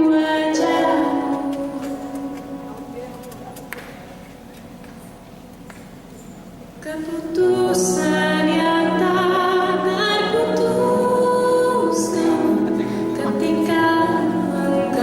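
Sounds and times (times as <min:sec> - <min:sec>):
woman singing: 0:00.0 - 0:02.4, 0:06.8 - 0:15.0
keyboard chords: 0:00.0 - 0:15.0.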